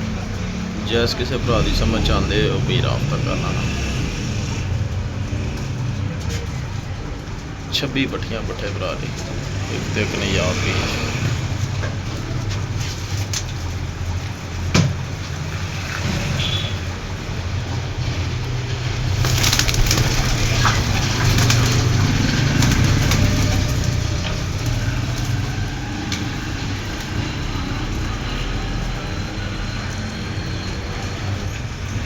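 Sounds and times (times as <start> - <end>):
rustling: 11.4 - 28.2.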